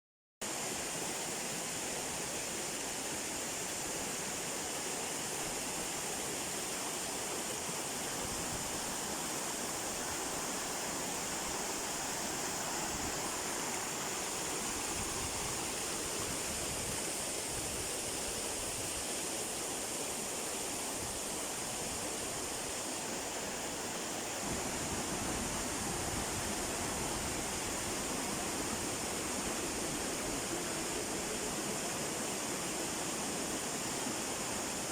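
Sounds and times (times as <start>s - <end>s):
waterfall rushing: 0.5s - 34.9s.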